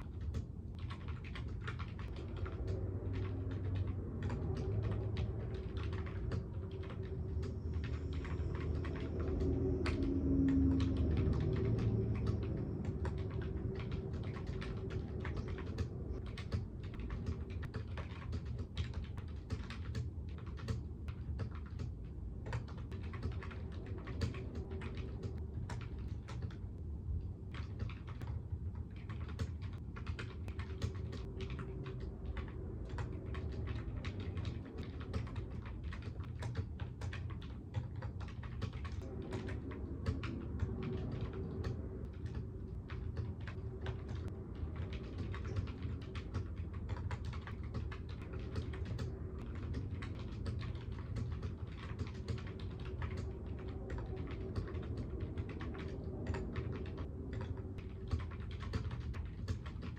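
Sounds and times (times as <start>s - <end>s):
keyboard typing: 0.0s - 59.9s
low hum: 0.0s - 59.9s.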